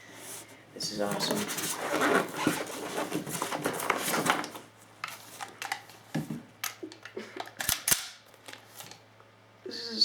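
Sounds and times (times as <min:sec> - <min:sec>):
packaging rustling: 0:01.0 - 0:05.9.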